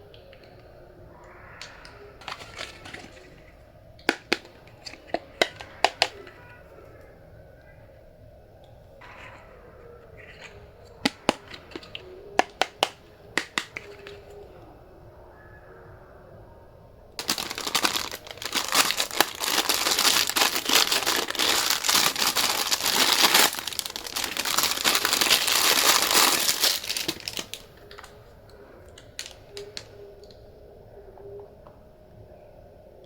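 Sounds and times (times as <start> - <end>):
crinkling and rustling: 1.6 - 7.0, 9.0 - 14.6, 17.2 - 30.4.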